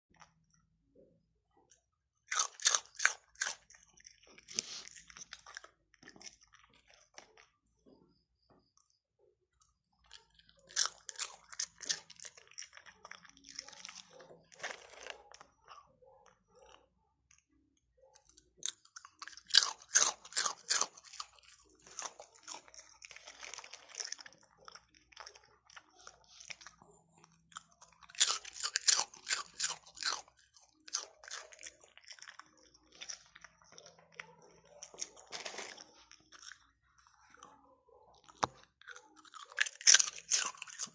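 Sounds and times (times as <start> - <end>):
dog crunching hard food: 2.3 - 7.4, 10.0 - 15.7, 18.3 - 36.7, 38.2 - 40.9.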